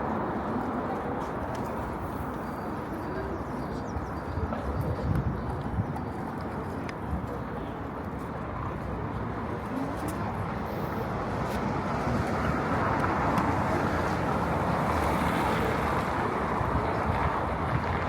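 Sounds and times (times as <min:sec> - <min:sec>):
passing cars: 0:09.9 - 0:18.0.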